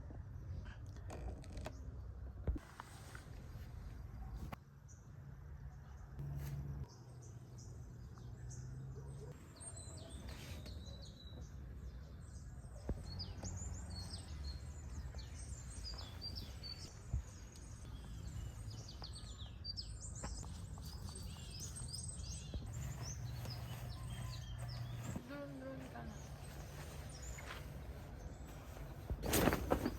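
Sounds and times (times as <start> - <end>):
small birds chirping: 6.8 - 29.9.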